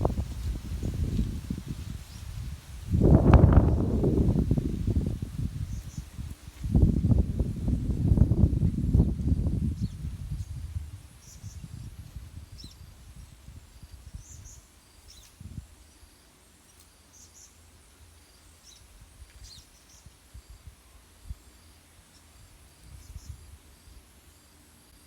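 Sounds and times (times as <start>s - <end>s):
wind buffeting microphone: 0.0s - 14.6s.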